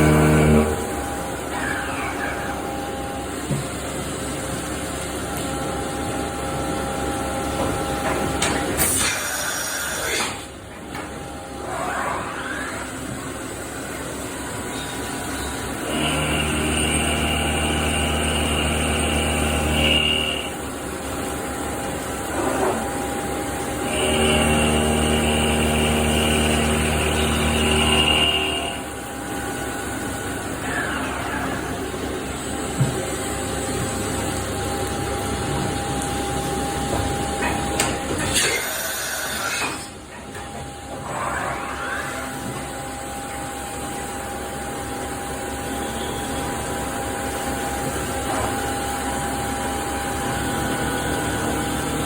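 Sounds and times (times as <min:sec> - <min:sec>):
milling machine running: 0:00.0 - 0:52.0
tool whining in the cut: 0:15.8 - 0:20.6, 0:23.8 - 0:29.0.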